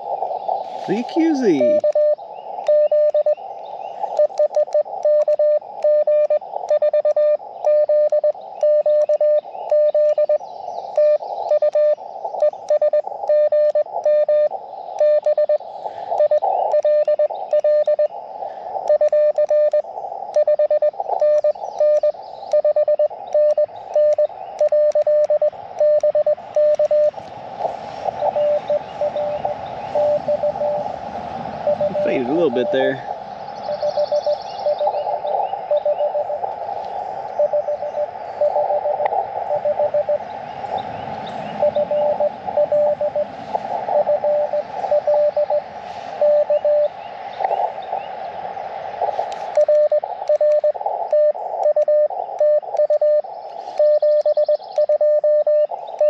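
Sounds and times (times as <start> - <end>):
receiver hiss: 0.0 - 56.0
morse code tone: 0.8 - 3.4, 4.1 - 10.4, 11.0 - 18.1, 18.8 - 30.9, 31.6 - 33.0, 33.6 - 36.6, 37.2 - 40.2, 41.6 - 46.9, 49.4 - 55.8
faint clicks: 2.6 - 14.3, 14.9 - 30.8, 33.7 - 40.1, 46.2 - 48.0, 49.0 - 56.0.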